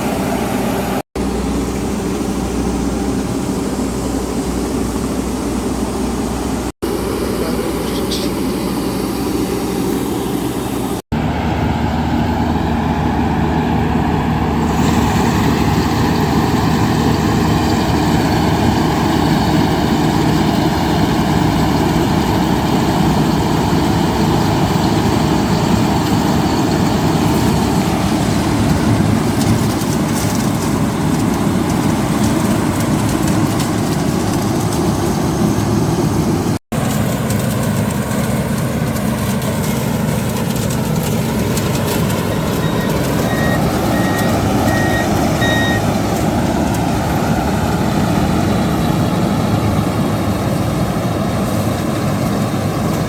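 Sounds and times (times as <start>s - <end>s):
diesel engine droning: 0.0s - 53.0s.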